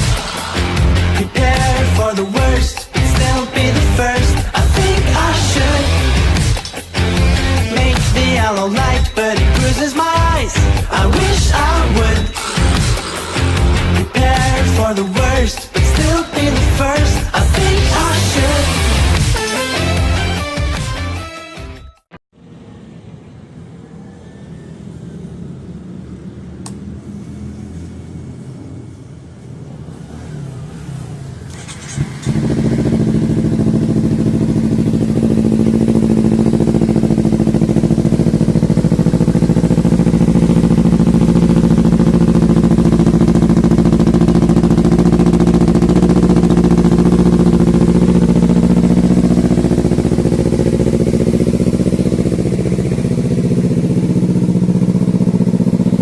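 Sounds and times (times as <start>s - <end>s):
motorcycle engine exhaust note: 0.0s - 9.7s, 30.9s - 56.0s.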